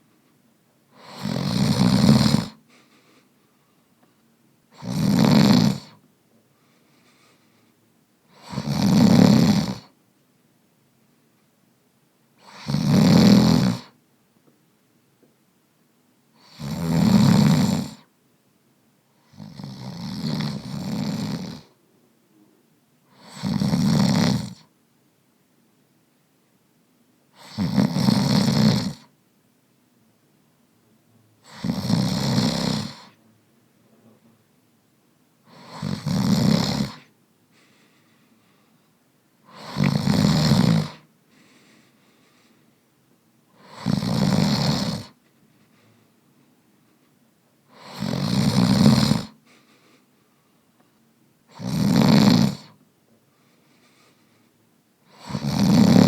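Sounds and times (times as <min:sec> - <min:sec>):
quiet breaths: 0:00.0 - 0:12.8, 0:30.2 - 0:34.7, 0:35.4 - 0:56.0
man snoring: 0:01.0 - 0:02.6, 0:04.7 - 0:06.0, 0:08.3 - 0:09.9, 0:12.4 - 0:13.9, 0:16.4 - 0:18.1, 0:19.2 - 0:21.8, 0:23.1 - 0:24.6, 0:27.4 - 0:29.1, 0:31.4 - 0:33.2, 0:35.5 - 0:37.1, 0:39.5 - 0:41.1, 0:43.6 - 0:45.2, 0:47.7 - 0:49.4, 0:51.5 - 0:52.8, 0:55.1 - 0:56.0.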